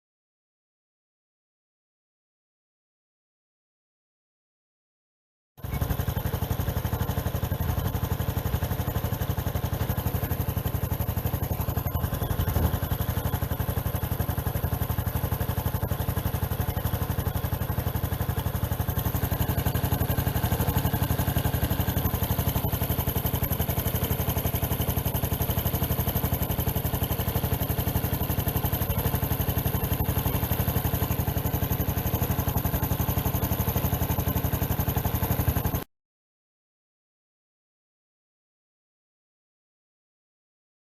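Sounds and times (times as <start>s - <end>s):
motorcycle engine idling: 5.6s - 35.9s.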